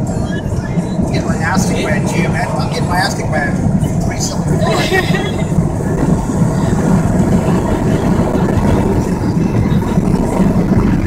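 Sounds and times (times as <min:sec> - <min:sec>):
car engine drone: 0:00.0 - 0:11.0
road noise inside car: 0:00.0 - 0:11.0.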